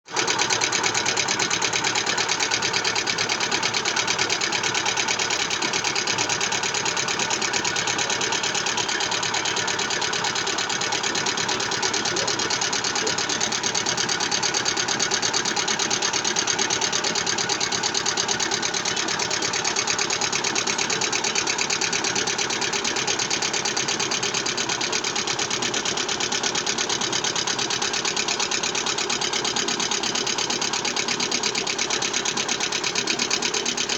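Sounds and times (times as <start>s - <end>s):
engine knocking clatter: 0.1s - 33.9s.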